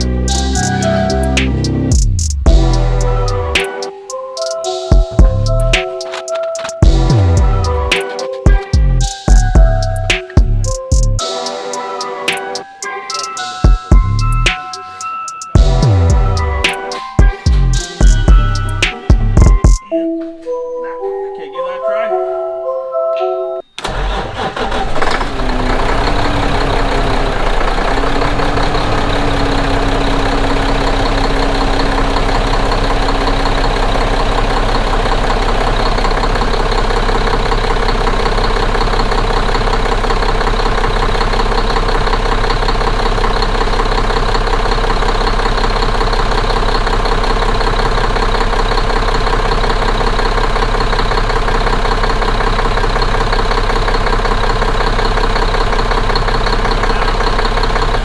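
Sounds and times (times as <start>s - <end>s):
diesel engine idling: 24.2s - 58.0s.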